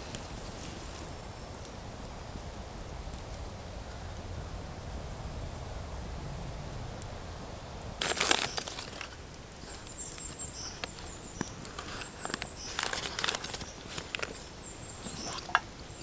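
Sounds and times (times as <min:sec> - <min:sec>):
rustling and scraping handling noise: 0:08.0 - 0:16.0.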